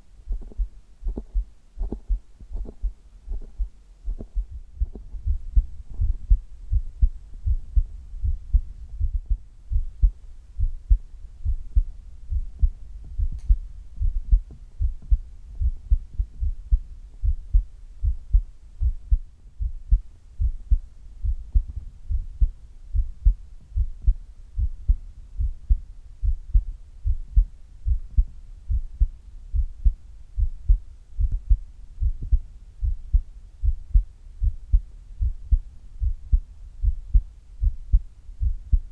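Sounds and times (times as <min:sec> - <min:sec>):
heartbeat thumps: 0:00.0 - 0:38.9.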